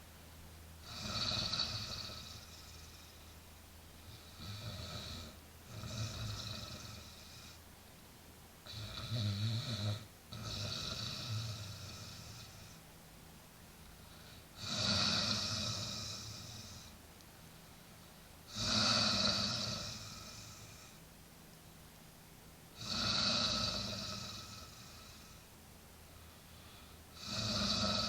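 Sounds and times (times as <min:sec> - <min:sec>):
man snoring: 0:00.8 - 0:03.2, 0:04.1 - 0:07.6, 0:08.7 - 0:12.8, 0:14.6 - 0:16.9, 0:18.5 - 0:21.0, 0:22.8 - 0:25.4, 0:27.2 - 0:28.0.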